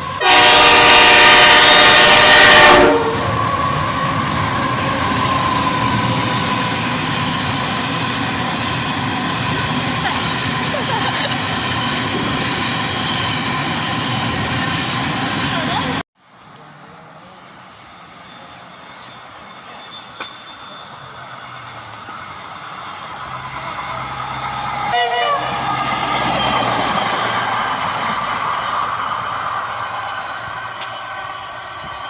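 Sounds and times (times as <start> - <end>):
train passing: 0.0 - 32.0
train horn blast: 0.2 - 3.4, 24.8 - 25.7.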